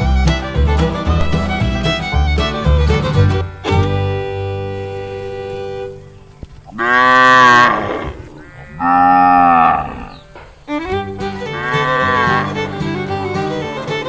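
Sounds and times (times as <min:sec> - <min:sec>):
cow mooing: 0:06.7 - 0:10.2.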